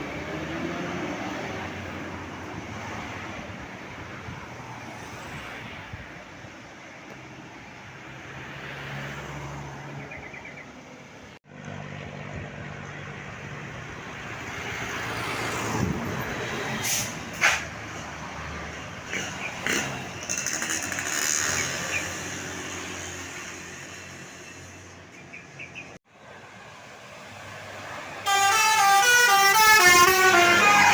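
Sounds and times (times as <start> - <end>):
traffic engines running: 0.0 - 30.9
large vehicle passing: 26.3 - 30.9.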